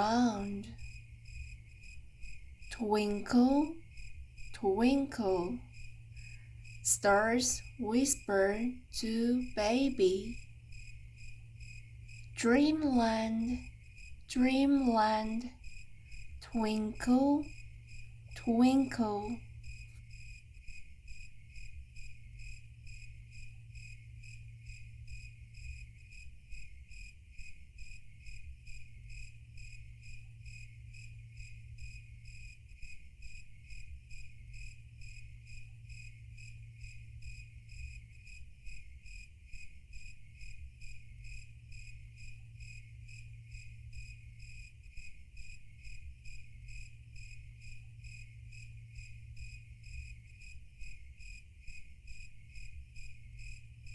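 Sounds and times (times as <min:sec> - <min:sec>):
crickets chirping: 0:00.0 - 0:53.9
low steady hum: 0:00.0 - 0:53.9.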